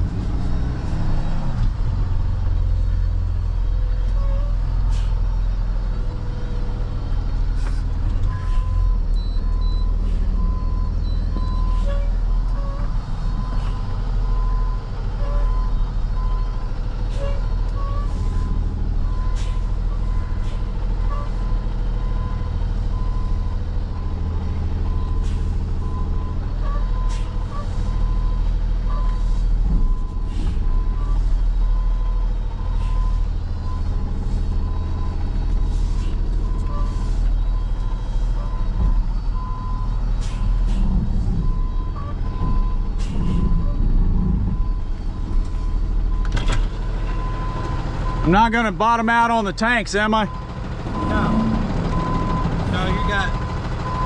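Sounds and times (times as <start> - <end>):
diesel truck engine running: 0.0 - 54.0
backup alarm beeping: 44.5 - 54.0.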